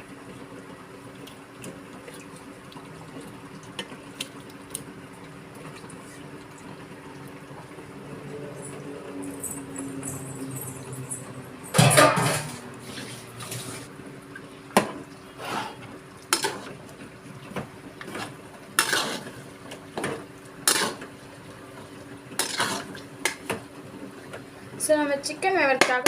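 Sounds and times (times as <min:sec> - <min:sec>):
metal spoon scraping cooking pot: 0:18.8 - 0:19.3.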